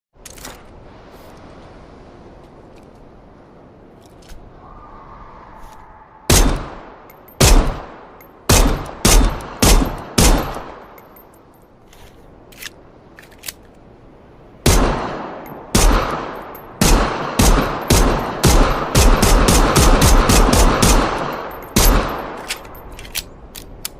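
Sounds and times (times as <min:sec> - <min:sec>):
pistol shots: 0:07.4 - 0:07.9, 0:08.5 - 0:10.8, 0:14.7 - 0:22.4.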